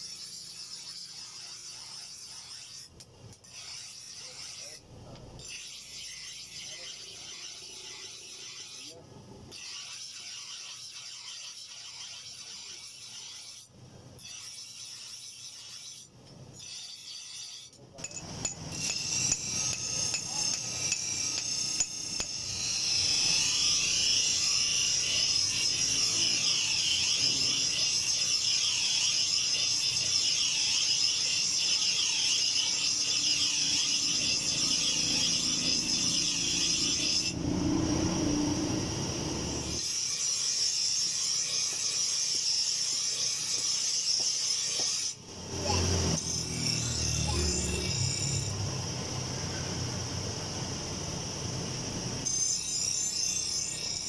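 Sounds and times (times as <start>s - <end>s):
abrasive rasping on knife blade: 17.0s - 48.7s.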